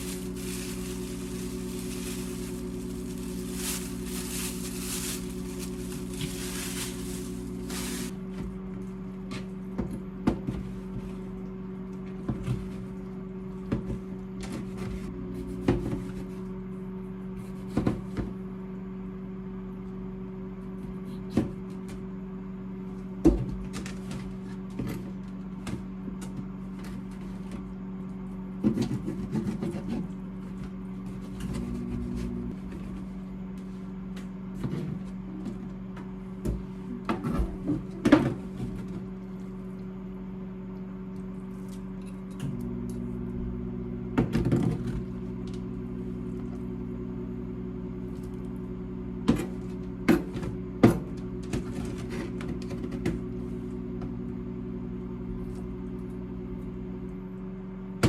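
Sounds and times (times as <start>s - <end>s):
kitchen appliance humming: 0.0s - 9.9s, 29.1s - 58.0s.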